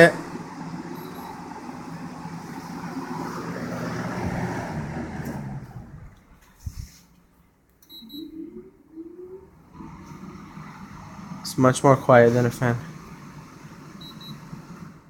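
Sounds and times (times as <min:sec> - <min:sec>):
faint rising tones: 0:00.0 - 0:07.2, 0:07.9 - 0:15.0
room fan whirring: 0:00.0 - 0:15.0
window air conditioner running: 0:00.0 - 0:15.0
low hum: 0:00.1 - 0:06.8.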